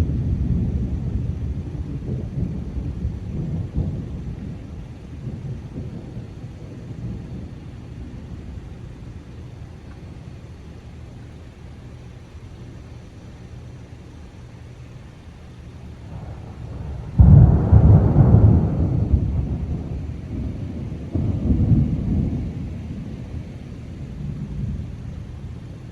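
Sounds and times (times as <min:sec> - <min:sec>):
loud thunder clap: 0:00.0 - 0:07.7, 0:16.1 - 0:25.4
thunder rumbling: 0:00.0 - 0:14.4, 0:15.6 - 0:25.9.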